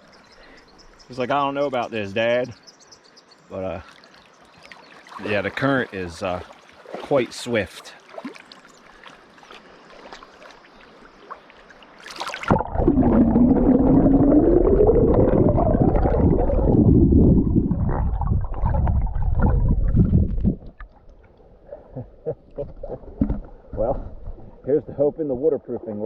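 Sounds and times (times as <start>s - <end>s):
quiet river current: 0.0s - 26.0s
muffled underwater current rushing: 12.1s - 21.0s
wavering underwater tone: 12.5s - 20.8s.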